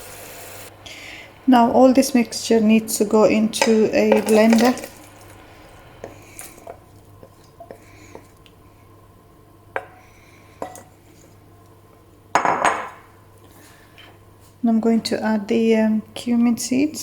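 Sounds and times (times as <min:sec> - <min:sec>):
utensils clinking against pots: 0:03.6 - 0:05.1, 0:10.6 - 0:10.9.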